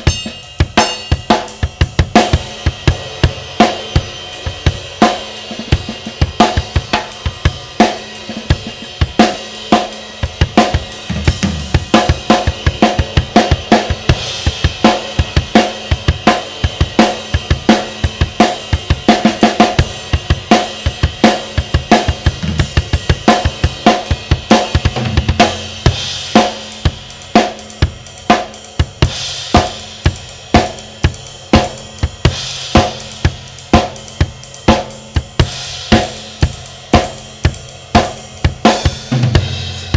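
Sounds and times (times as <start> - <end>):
ride cymbal ringing: 0.0 - 4.6.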